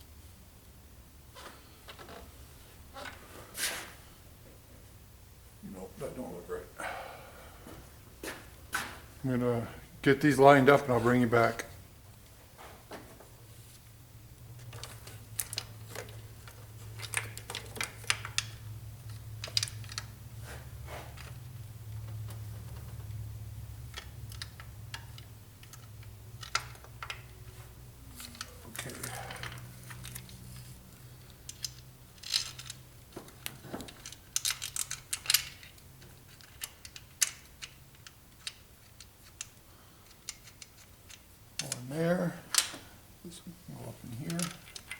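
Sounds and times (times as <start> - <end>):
steady low hum: 0.0 - 44.9
metal parts and tools clicking: 31.2 - 41.9, 44.1 - 44.9.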